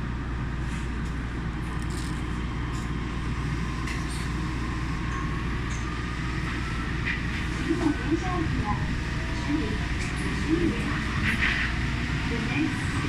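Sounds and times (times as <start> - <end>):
monorail train rumbling: 0.0 - 13.0.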